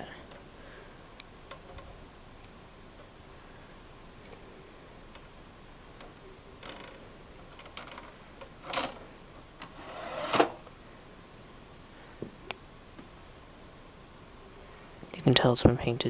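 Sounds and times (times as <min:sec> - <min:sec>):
short scrape: 0:09.7 - 0:10.6.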